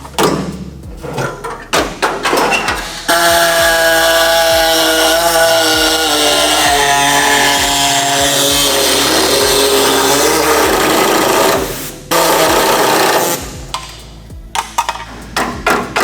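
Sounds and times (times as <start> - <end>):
power tool cutting metal: 2.8 - 13.6.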